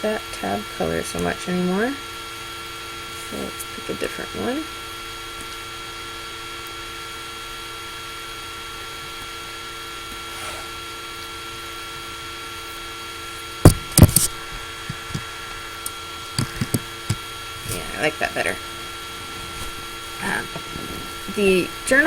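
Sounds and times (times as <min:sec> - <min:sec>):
laptop fan humming and whining: 0:00.0 - 0:22.0
loud sharp knocks: 0:13.6 - 0:15.2.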